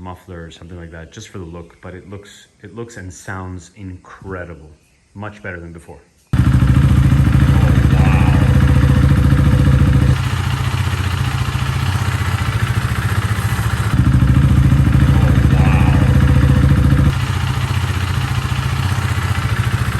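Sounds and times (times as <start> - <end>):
motorcycle engine idling: 6.4 - 19.9.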